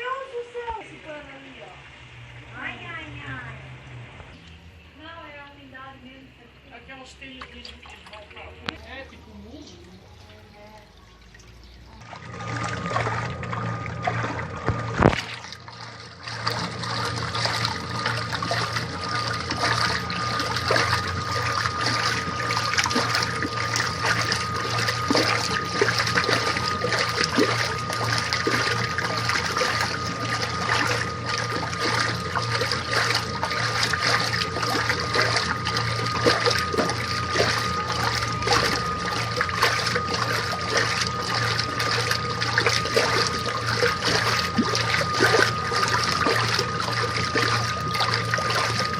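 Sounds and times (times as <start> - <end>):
water sloshing in washing machine: 0.0 - 5.8, 6.6 - 48.9
motor hum: 0.0 - 48.9
thin steady whine: 0.0 - 48.9.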